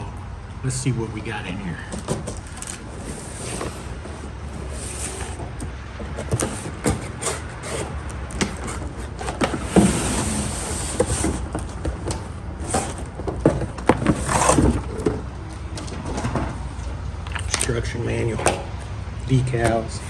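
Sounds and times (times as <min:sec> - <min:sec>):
cardboard packaging rustling: 0:02.2 - 0:15.0.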